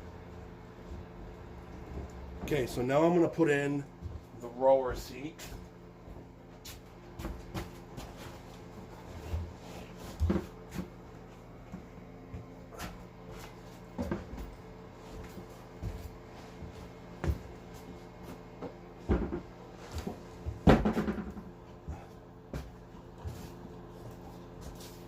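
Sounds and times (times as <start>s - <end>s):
knocks and bumps: 19.0s - 21.5s.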